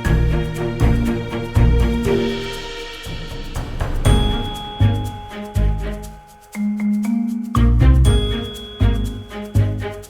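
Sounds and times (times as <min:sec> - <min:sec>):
background music with steady beat: 0:00.0 - 0:10.0
bright bell-like tones: 0:04.1 - 0:10.0.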